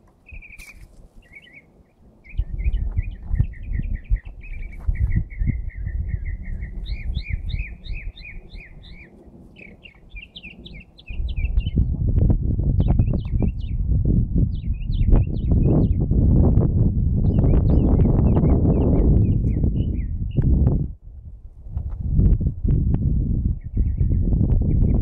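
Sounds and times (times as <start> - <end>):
songbird singing chirps: 0.0 - 12.0, 12.8 - 13.8, 14.5 - 16.1, 17.2 - 20.6
low rumble on microphone: 0.0 - 25.0.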